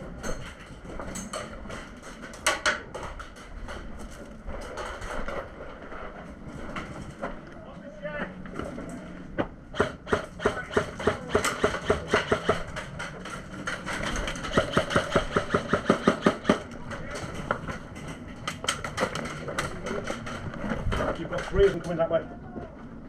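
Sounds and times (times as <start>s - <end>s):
airsoft gun shots: 9.7s - 12.6s.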